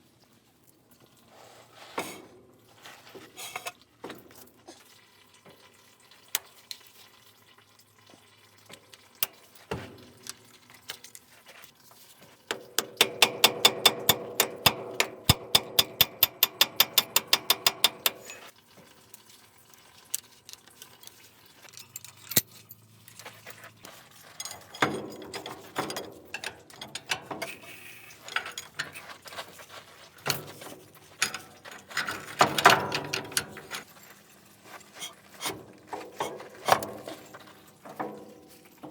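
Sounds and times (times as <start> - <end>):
metallic clinks and knocks: 12.5 - 18.5, 21.7 - 23.5, 30.2 - 38.9
ratchet wrench clicking: 12.8 - 18.5.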